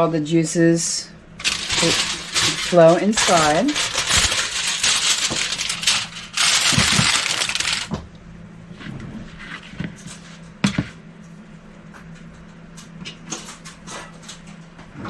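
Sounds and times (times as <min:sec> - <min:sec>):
aluminium foil crinkling: 0:01.4 - 0:08.0.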